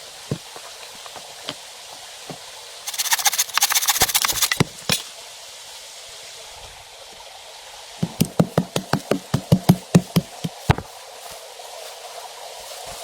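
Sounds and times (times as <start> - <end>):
rain hissing: 0.0 - 13.0
rapid crackling snaps: 2.9 - 4.6.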